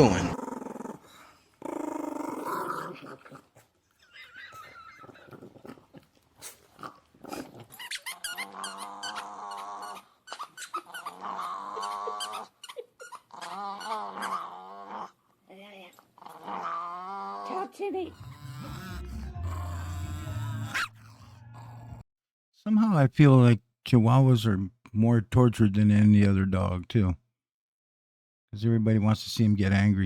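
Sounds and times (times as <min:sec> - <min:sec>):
dog growling and snarling: 0:00.0 - 0:03.8, 0:04.6 - 0:12.6, 0:13.2 - 0:15.2, 0:16.1 - 0:22.0.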